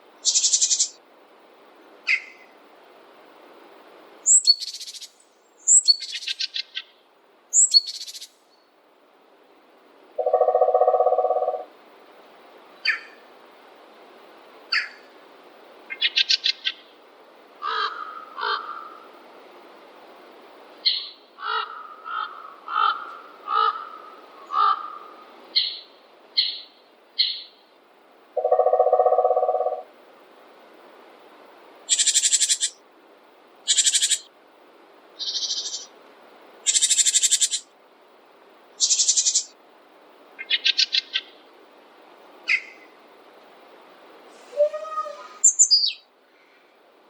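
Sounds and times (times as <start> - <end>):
fast rattling bird call: 0.2 - 1.0, 17.6 - 19.0, 20.9 - 25.8, 31.9 - 32.8, 33.6 - 34.3, 35.2 - 35.9, 36.6 - 37.7, 38.8 - 39.5
harsh screechy bird calls: 0.2 - 1.0, 20.9 - 25.8, 31.9 - 32.8, 33.7 - 34.3, 35.2 - 35.9, 36.6 - 37.7, 38.8 - 39.5, 44.4 - 46.0
low buzzy bird call: 10.2 - 11.7, 20.8 - 27.6, 28.4 - 29.9, 35.2 - 35.9, 44.3 - 46.6
short bird calls: 44.4 - 46.6.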